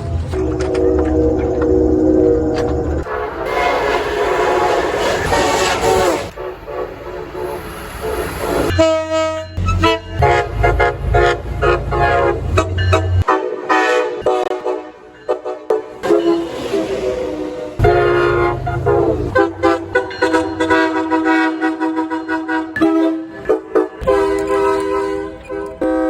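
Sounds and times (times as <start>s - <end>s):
train horn chord: 0.4s - 26.0s
short choppy horn sounds: 3.0s - 6.5s.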